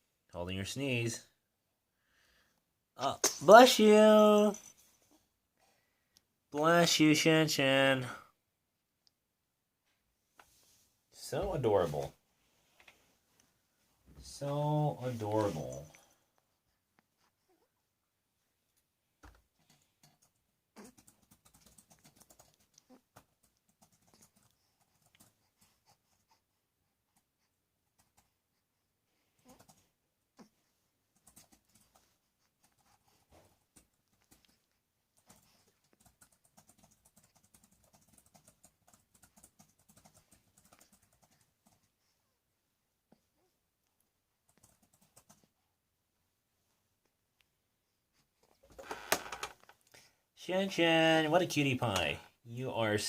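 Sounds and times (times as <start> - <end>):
soft rustles: 9.8 - 17.6.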